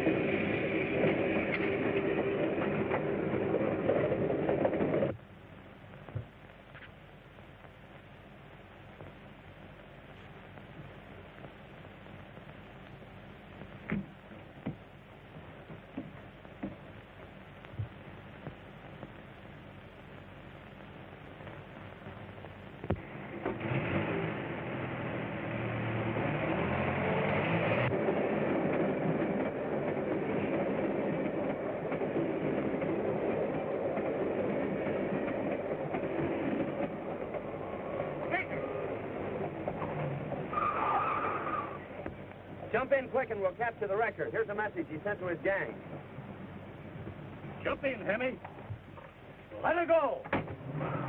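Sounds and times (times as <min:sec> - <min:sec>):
train rumbling and clattering: 0:00.0 - 0:06.4, 0:09.9 - 0:19.3, 0:21.4 - 0:50.8
faint hiss: 0:00.0 - 0:27.9.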